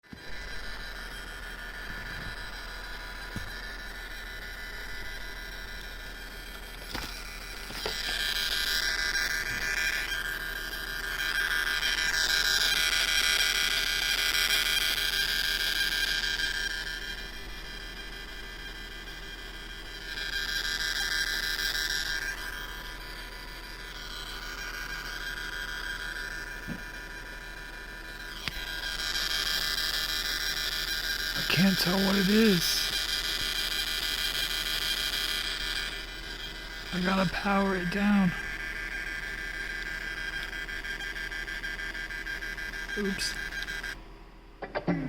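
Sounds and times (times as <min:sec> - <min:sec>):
speaker high-pitched whining: 0:00.0 - 0:45.0
speaker hiss: 0:31.4 - 0:32.8.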